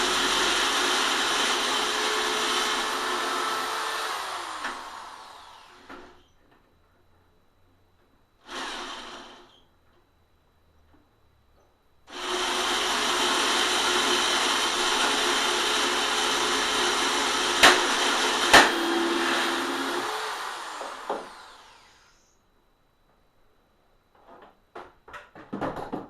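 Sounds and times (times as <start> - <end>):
electric motor whining: 12.1 - 22.3.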